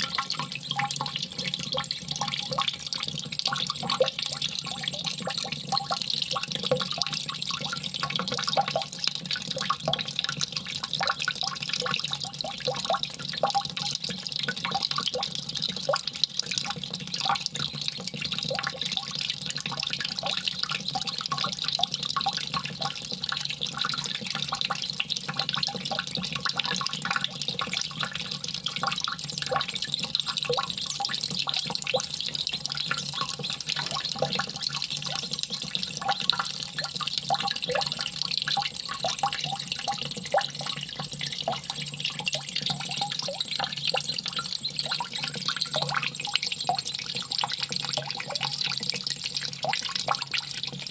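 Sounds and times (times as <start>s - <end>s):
small drips and splashes: 0.0s - 50.9s
water trickling: 0.0s - 50.9s.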